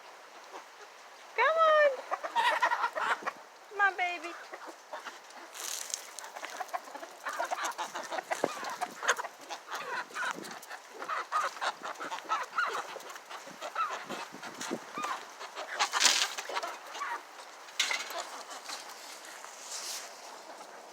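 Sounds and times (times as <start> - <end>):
poultry calling: 1.8 - 3.4, 4.3 - 20.9
rustling bursts: 14.2 - 16.9.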